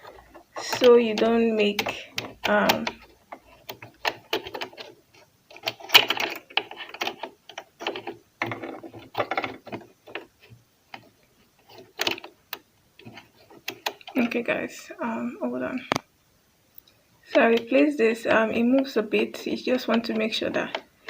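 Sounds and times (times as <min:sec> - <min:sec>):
small metal parts clicking: 0:00.0 - 0:11.1, 0:11.7 - 0:14.2.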